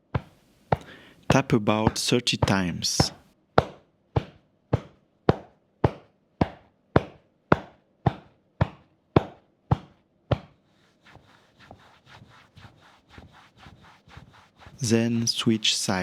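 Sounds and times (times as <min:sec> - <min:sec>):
hand tapping on back: 0:00.0 - 0:10.6.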